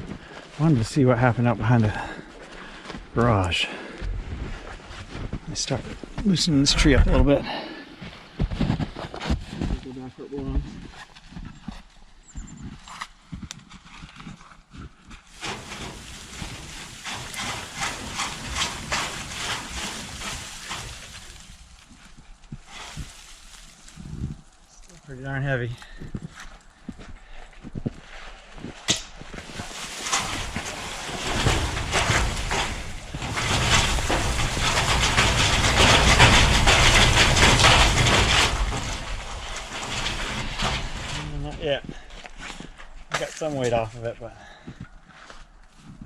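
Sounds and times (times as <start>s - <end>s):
snow and ice falling off branches: 15.3s - 25.7s, 28.9s - 44.0s.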